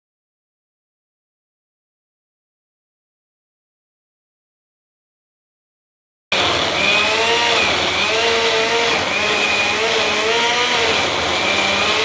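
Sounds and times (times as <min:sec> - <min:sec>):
appliance electric motor humming: 0:06.3 - 0:12.0.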